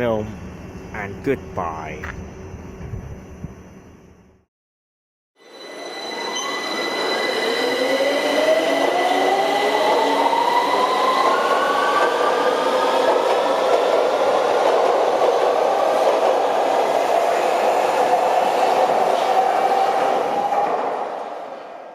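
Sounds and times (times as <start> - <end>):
steady high tone: 5.4 - 11.2.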